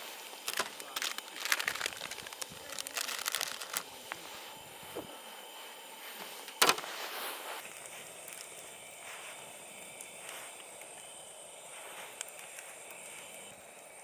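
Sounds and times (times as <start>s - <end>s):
close rustling: 0.0s - 4.6s, 6.0s - 10.7s.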